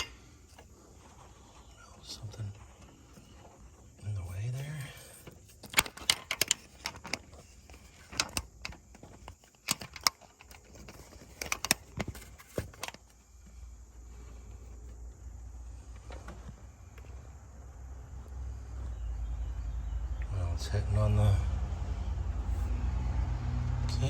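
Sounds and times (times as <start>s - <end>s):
low steady rumble: 10.8s - 24.0s.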